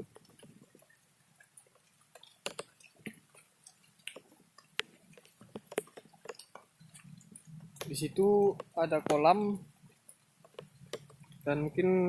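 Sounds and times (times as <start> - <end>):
light clicks and taps: 0.0 - 11.8.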